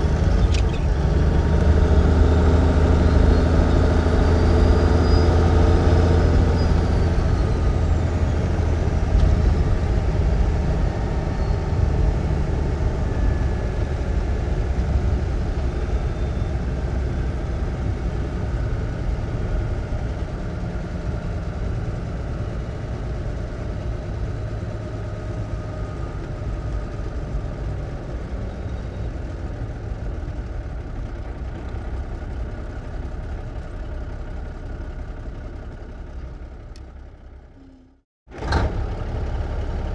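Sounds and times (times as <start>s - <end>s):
truck engine running low: 0.0s - 39.9s.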